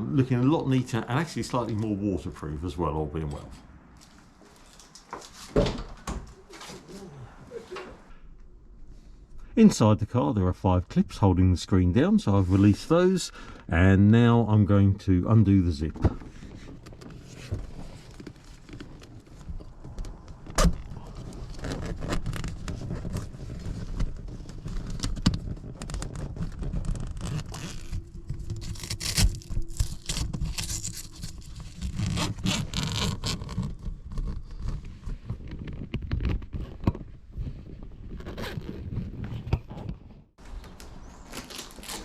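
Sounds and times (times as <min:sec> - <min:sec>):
zip scraping and clicking: 0:21.1 - 0:39.9.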